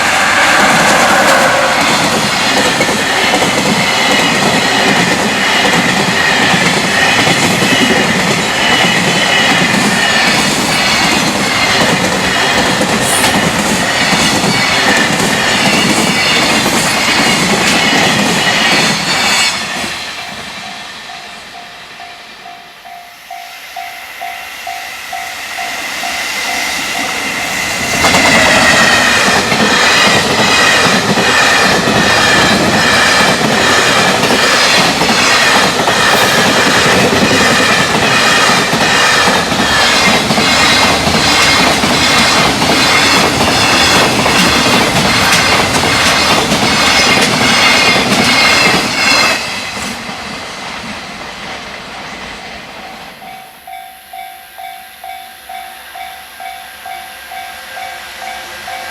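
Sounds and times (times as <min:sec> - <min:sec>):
freight train wheels clattering: 0:00.0 - 0:20.8, 0:25.6 - 0:50.1
level crossing warning bell: 0:20.2 - 0:27.9, 0:52.8 - 0:58.9.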